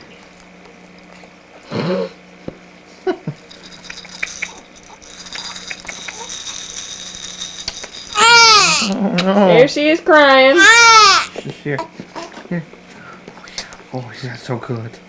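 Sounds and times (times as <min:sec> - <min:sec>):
baby whimpering: 0:08.2 - 0:09.0, 0:10.5 - 0:11.3.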